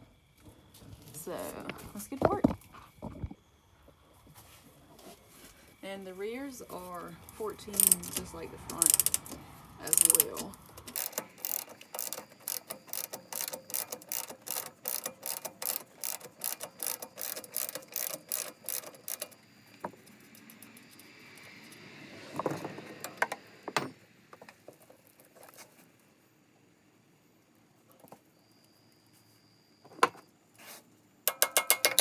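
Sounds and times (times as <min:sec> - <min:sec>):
ratchet wrench clicking: 0:07.8 - 0:21.8, 0:22.9 - 0:23.9, 0:31.3 - 0:32.0.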